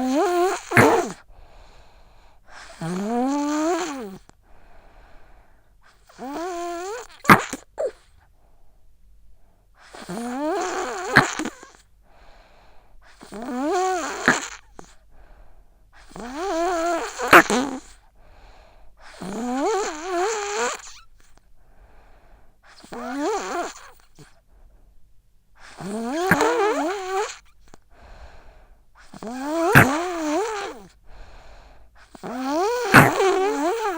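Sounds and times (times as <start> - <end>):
child snoring: 0.0 - 1.8, 2.4 - 4.3, 5.8 - 8.2, 9.8 - 11.9, 13.0 - 15.1, 16.0 - 21.4, 22.7 - 24.4, 25.6 - 33.9
sharp click in snores: 0.5 - 1.2, 6.0 - 8.0, 9.9 - 11.8, 13.2 - 15.0, 16.0 - 18.0, 25.7 - 27.8, 29.0 - 30.9, 32.1 - 33.9.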